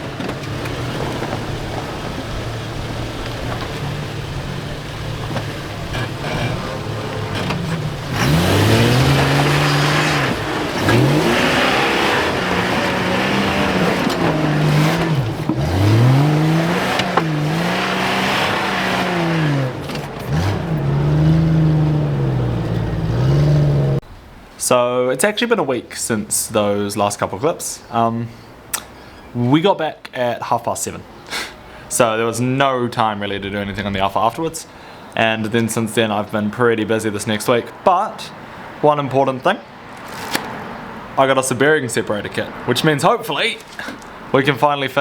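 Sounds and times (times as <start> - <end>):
car engine revving: 0.0 - 24.0.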